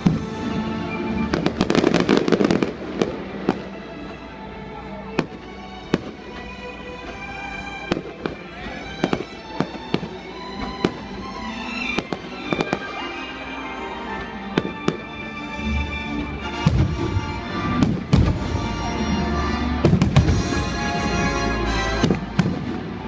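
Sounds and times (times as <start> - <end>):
fireworks bangs: 0.0 - 4.2, 7.9 - 11.1, 11.9 - 13.1, 16.5 - 19.2, 19.8 - 23.0
music: 0.0 - 23.0.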